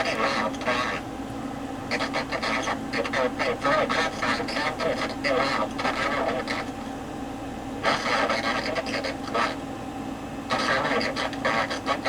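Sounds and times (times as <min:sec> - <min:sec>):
distorted raspy voice: 0:07.9 - 0:09.6, 0:10.5 - 0:12.0.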